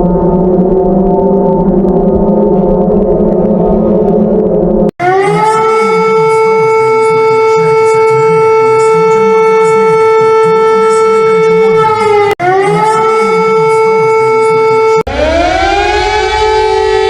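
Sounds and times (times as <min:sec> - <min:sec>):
emergency warning siren: 0:00.0 - 0:17.0
low droning sound: 0:00.0 - 0:17.0.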